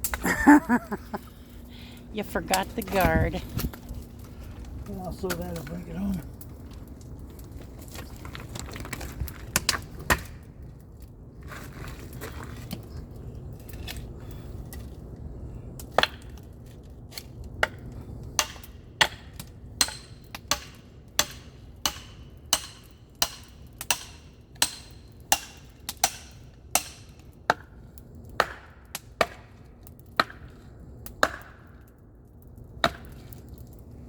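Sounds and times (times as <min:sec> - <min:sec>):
blade chopping firewood: 0:06.4 - 0:10.5, 0:15.8 - 0:32.0, 0:32.8 - 0:33.8.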